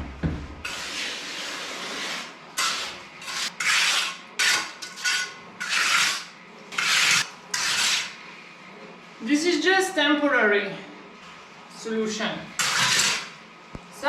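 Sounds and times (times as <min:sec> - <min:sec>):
trowel scraping wet concrete: 0:00.7 - 0:08.2, 0:12.6 - 0:13.3.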